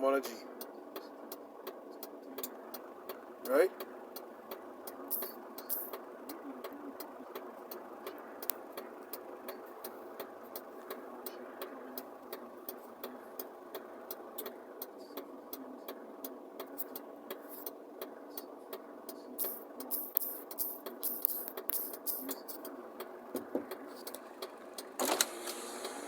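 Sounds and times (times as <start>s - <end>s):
faint sharp ticks: 16.2s - 25.6s
mechanical hum: 19.4s - 26.0s.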